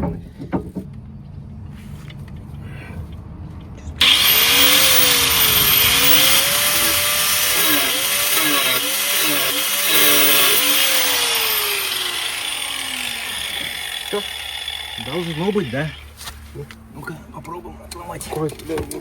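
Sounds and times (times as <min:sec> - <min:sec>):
angle grinder cutting metal: 0:04.0 - 0:16.4.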